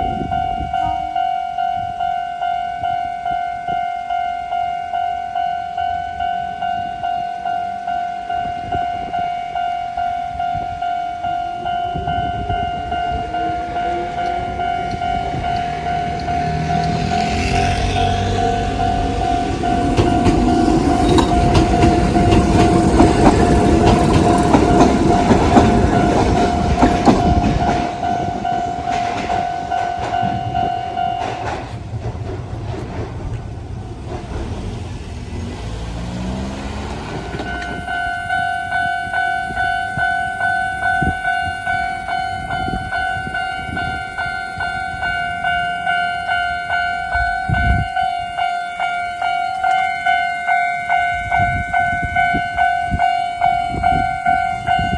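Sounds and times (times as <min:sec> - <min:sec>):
electronic crossing warning bell: 0:00.0 - 0:31.9, 0:35.8 - 0:54.9
train wheels clattering: 0:13.1 - 0:39.0.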